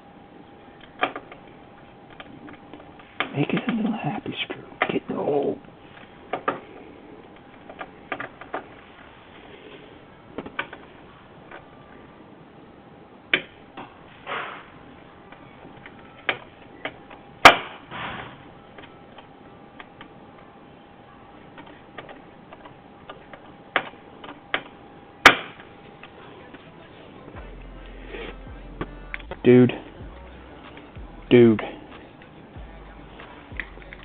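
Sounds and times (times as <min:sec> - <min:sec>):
hardware and tools clicking: 0:00.8 - 0:09.5, 0:18.6 - 0:20.5, 0:21.5 - 0:26.7.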